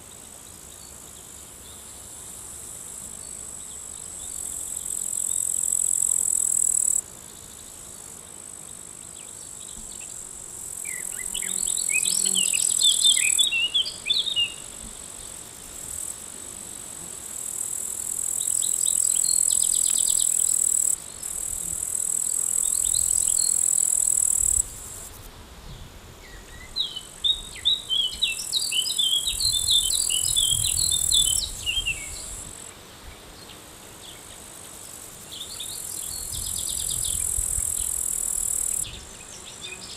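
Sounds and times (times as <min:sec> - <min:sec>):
insect buzzing: 0:00.0 - 0:39.9
small bird chirping: 0:10.9 - 0:14.6, 0:26.4 - 0:32.4.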